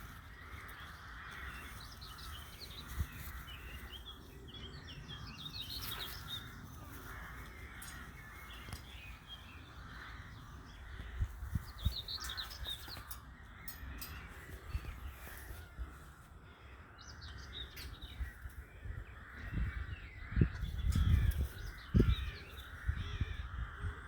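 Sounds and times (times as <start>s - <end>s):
birds chirping: 0.0s - 24.0s
crow cawing: 0.2s - 3.6s, 6.6s - 8.9s, 9.7s - 11.5s, 18.3s - 24.0s.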